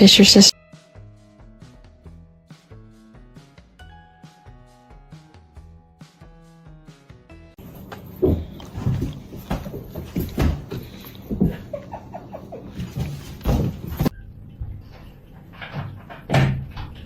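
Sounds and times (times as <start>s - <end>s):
knocks and thumps: 12.8s - 14.8s.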